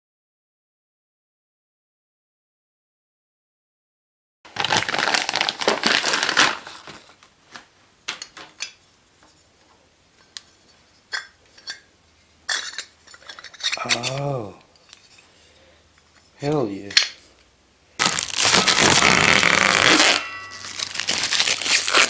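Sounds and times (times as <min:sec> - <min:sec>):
plastic wrap crumpling and tearing: 0:04.5 - 0:07.7, 0:18.0 - 0:22.0.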